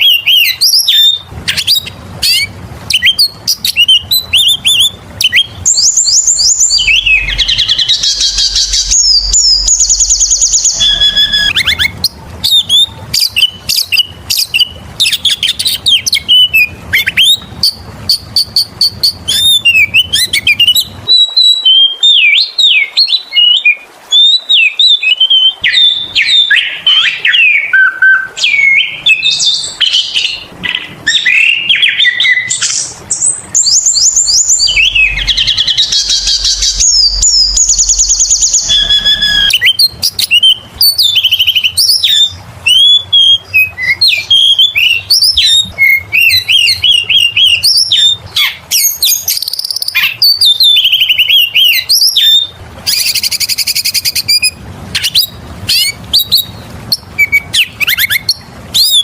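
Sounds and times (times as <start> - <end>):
bird singing whistled notes: 0.0 - 59.0.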